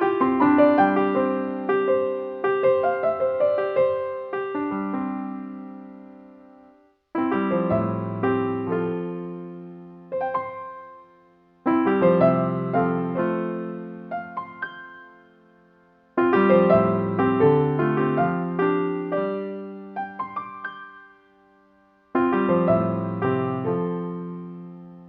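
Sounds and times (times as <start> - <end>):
piano music: 0.0 - 25.0.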